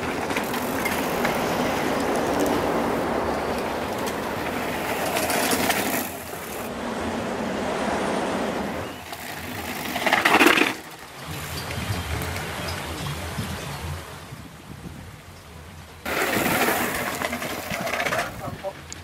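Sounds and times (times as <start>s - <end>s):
bike tyres rolling over rough ground: 0.0s - 6.8s, 8.8s - 14.0s, 16.0s - 19.0s
rush of noise: 0.0s - 10.8s
bike rattling: 0.0s - 14.1s, 16.0s - 19.0s.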